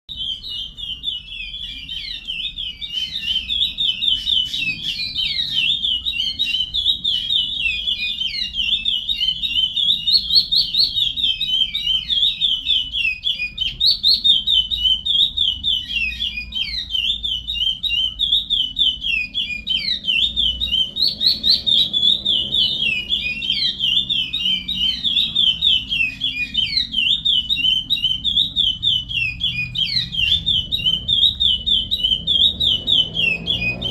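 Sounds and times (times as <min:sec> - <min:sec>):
finch singing rapid sweeping notes: 0:00.1 - 0:33.9.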